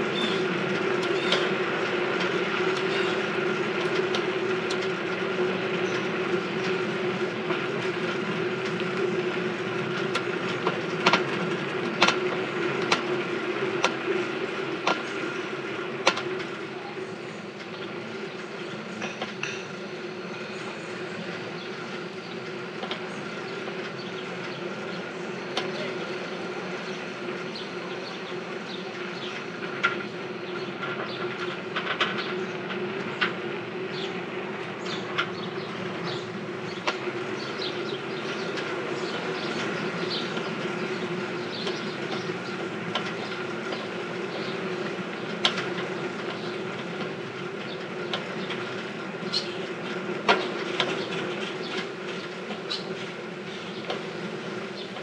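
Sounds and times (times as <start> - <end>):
bicycle whirring drone: 0.0 - 55.0
bicycle clicks and clanks: 9.8 - 13.2, 34.8 - 55.0.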